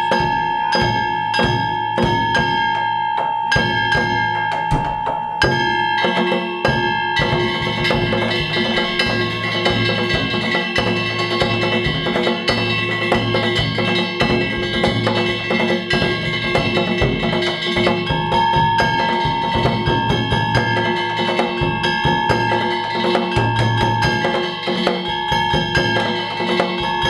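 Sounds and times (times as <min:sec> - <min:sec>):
metal hand gongs ringing: 0:00.0 - 0:27.0
taiko drum: 0:00.0 - 0:27.0.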